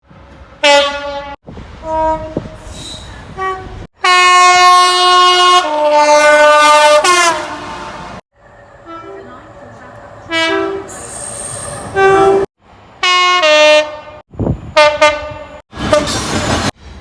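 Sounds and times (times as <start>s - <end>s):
distant train horn: 0.6s - 2.6s, 3.4s - 8.2s, 8.8s - 11.1s, 11.9s - 14.2s, 14.8s - 16.2s
train horn blasts: 0.6s - 2.6s, 3.3s - 8.2s, 8.8s - 9.4s, 10.3s - 11.0s, 11.9s - 14.2s, 14.8s - 16.2s.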